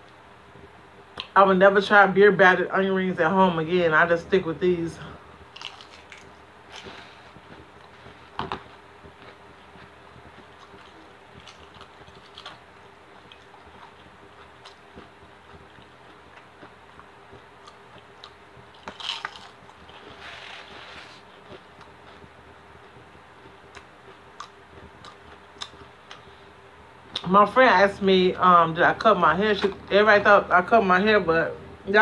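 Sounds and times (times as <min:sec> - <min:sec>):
crunching onion rings: 0:05.5 - 0:26.3
quiet chewing: 0:05.5 - 0:26.5.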